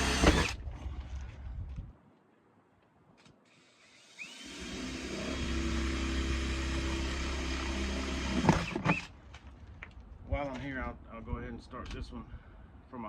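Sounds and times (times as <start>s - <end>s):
power drill drilling into steel: 0.0s - 0.6s, 3.5s - 9.1s.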